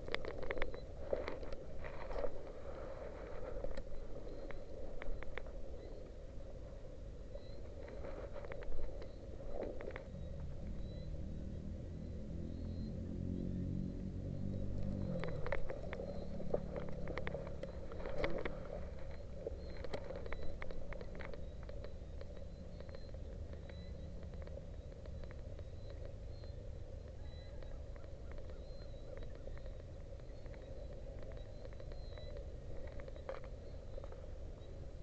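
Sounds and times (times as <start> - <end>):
distant vehicle engine running: 10.1 - 20.5
sharp clicks and rattles: 14.8 - 26.5.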